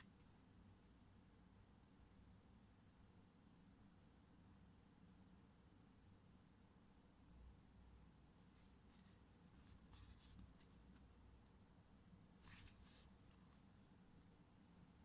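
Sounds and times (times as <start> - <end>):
faint scratchy rubbing: 8.5 - 11.4, 12.4 - 13.8.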